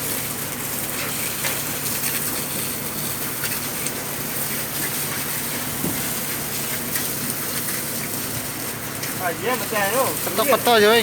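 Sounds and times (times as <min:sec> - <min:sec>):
machinery hum and hiss: 0:00.0 - 0:11.0.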